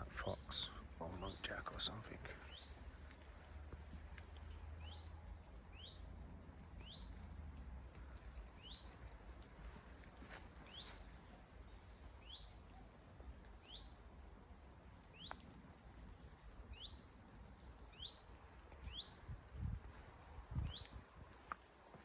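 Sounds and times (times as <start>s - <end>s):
small bird calling: 0.0s - 3.0s, 5.7s - 6.0s, 12.2s - 14.0s, 15.1s - 15.4s, 16.7s - 17.1s
wind rumble on microphone: 14.3s - 22.0s.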